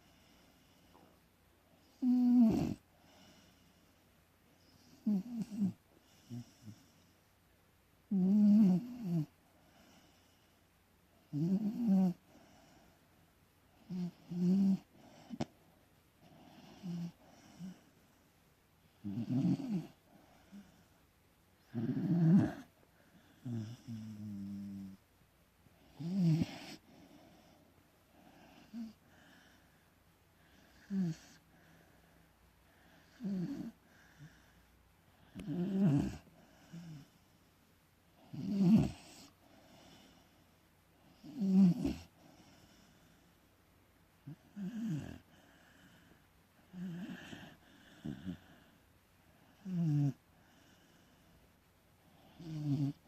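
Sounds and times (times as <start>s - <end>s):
dog snoring: 1.8s - 3.8s, 4.6s - 7.1s, 8.1s - 10.4s, 11.2s - 12.9s, 13.8s - 15.5s, 16.2s - 17.9s, 18.9s - 21.0s, 21.6s - 25.0s, 25.8s - 29.7s, 30.4s - 31.9s, 32.7s - 34.6s, 35.2s - 37.2s, 38.2s - 40.3s, 41.0s - 43.2s, 44.2s - 48.8s, 49.4s - 51.3s, 52.1s - 53.0s.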